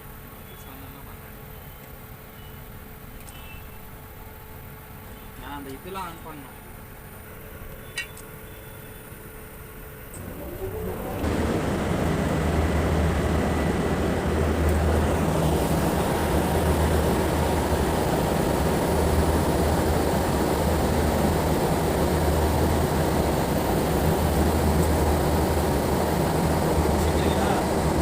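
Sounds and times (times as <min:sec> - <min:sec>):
pump motor humming: 0:10.1 - 0:28.0.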